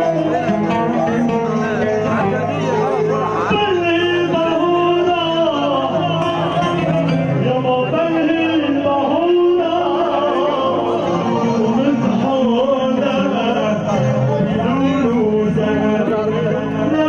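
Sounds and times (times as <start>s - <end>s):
instrumental backing music: 0.0s - 17.0s
person singing ornamented notes: 0.0s - 17.0s.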